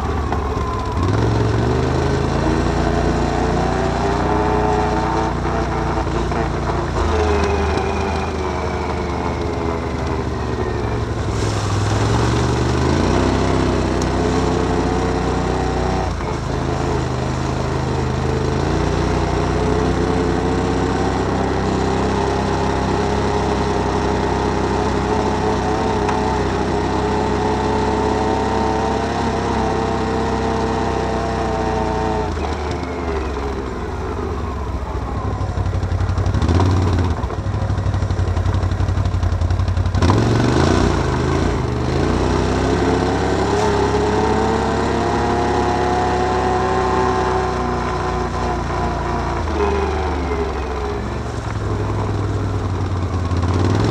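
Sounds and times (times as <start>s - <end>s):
falling whine: 0.0s - 28.0s
atv engine running: 0.0s - 53.9s.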